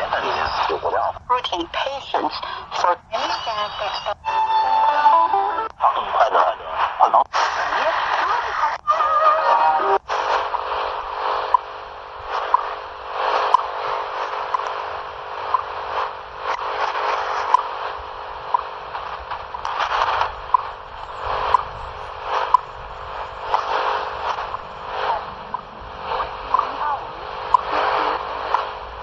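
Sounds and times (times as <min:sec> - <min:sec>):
radio static hiss: 0:00.0 - 0:29.0
time signal tick pips: 0:20.5 - 0:25.7, 0:27.5 - 0:27.7.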